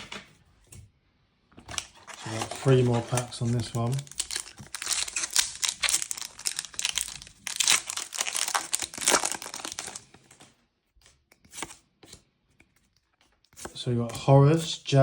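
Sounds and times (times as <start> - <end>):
wrapper tearing and crinkling: 1.7 - 10.4.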